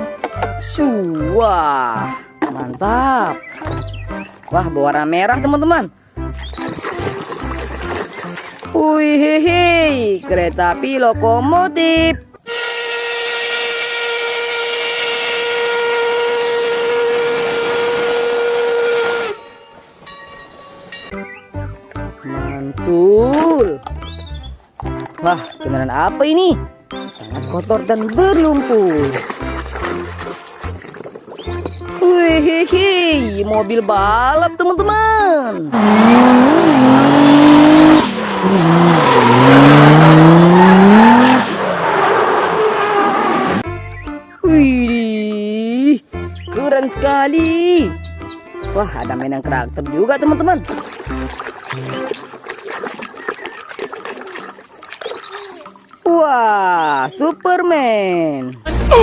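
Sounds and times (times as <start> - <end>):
steam locomotive whistle: 12.4 - 20.1
race car engine revving: 35.7 - 43.6.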